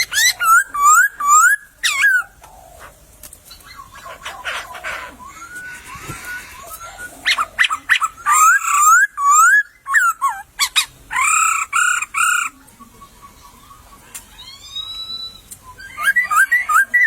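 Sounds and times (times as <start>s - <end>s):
bird singing whistled notes: 0.0s - 2.2s, 5.2s - 10.8s, 14.6s - 17.0s.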